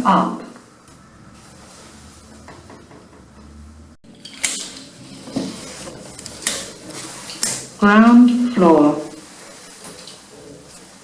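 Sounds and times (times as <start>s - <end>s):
lift car humming: 0.0s - 10.9s.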